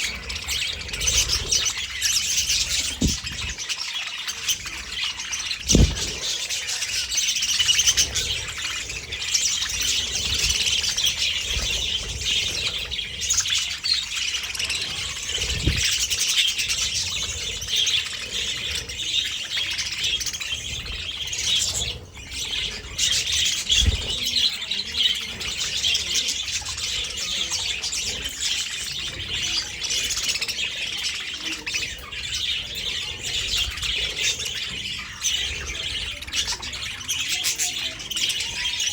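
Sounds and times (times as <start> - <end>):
budgerigars chattering: 0.0 - 38.9
low thumps: 5.6 - 6.2.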